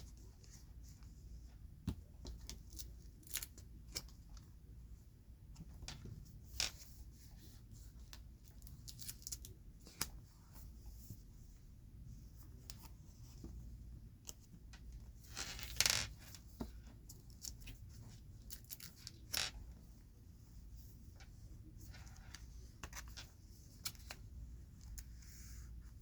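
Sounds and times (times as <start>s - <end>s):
cards tapping and scraping: 15.3s - 17.9s.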